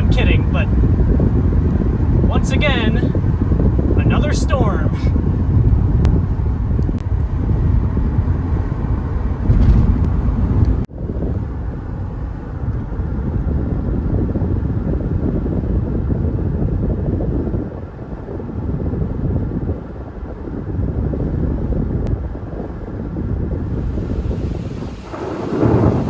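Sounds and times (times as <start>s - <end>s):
car road and engine rumble: 0.0s - 16.4s, 19.6s - 26.0s
wind noise: 0.0s - 26.0s.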